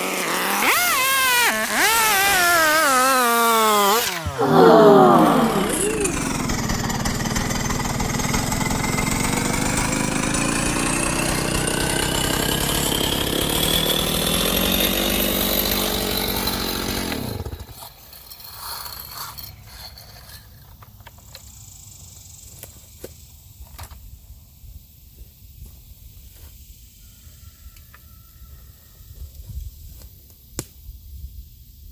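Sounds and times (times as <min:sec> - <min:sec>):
chainsaw cutting wood: 0:00.0 - 0:19.4.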